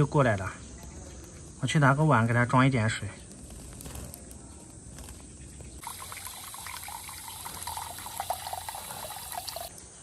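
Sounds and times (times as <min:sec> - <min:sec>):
tap water running into bowl: 0:05.8 - 0:09.7.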